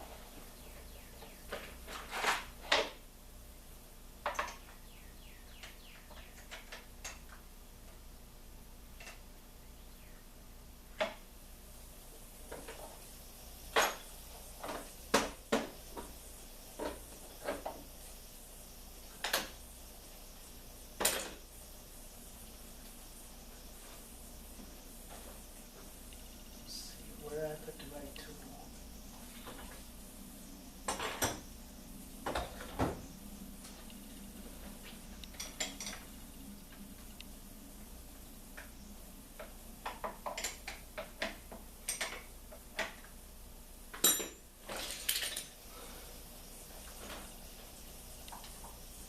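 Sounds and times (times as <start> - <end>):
metal tools clinking and knocking: 44.0 - 45.6.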